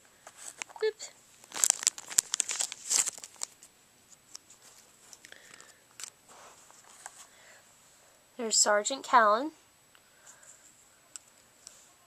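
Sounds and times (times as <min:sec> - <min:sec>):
plastic package crinkling: 0:00.4 - 0:03.7, 0:04.3 - 0:06.2.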